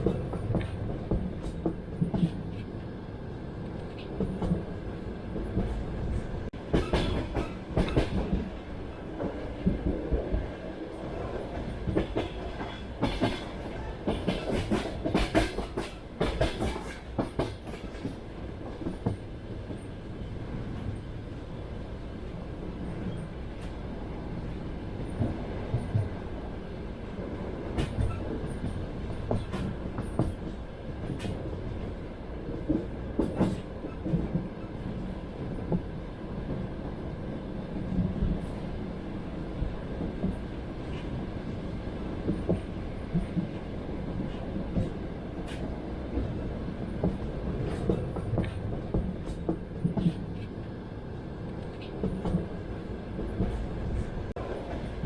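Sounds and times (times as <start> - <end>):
clickety-clack over rail joints: 0.0 - 3.0, 3.6 - 21.4, 22.3 - 55.0
train wheels rumbling on rails: 0.0 - 55.0.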